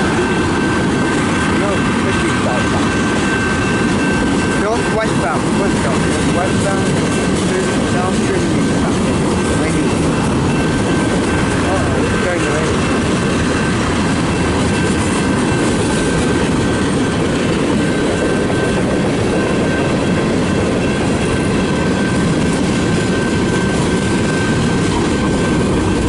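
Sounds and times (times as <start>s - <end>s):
high whine: 0.0s - 26.0s
train wheels rumbling on rail: 0.0s - 26.0s.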